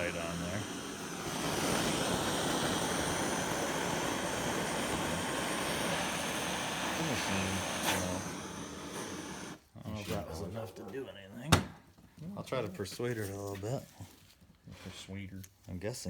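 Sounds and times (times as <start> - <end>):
gas torch hissing: 0.0 - 9.6.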